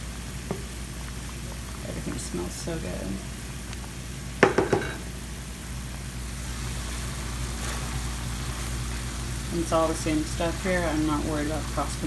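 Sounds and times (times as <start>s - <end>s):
food sizzling in a pan: 0.0s - 12.0s
utensil clinking against pan: 4.4s - 5.0s.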